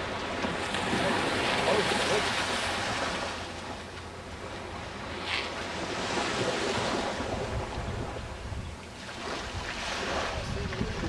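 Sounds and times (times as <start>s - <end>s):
surf washing onto beach: 0.0s - 3.8s, 9.0s - 11.0s
wind buffeting microphone: 5.7s - 11.0s.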